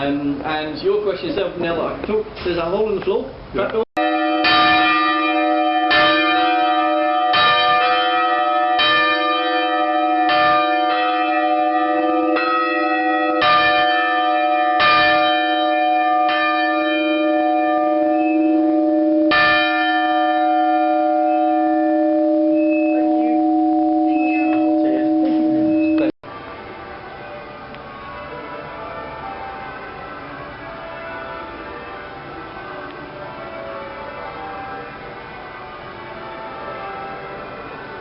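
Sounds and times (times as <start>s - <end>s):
ringing hum of bell tones: 4.0s - 26.2s
church bells ringing: 4.0s - 38.0s.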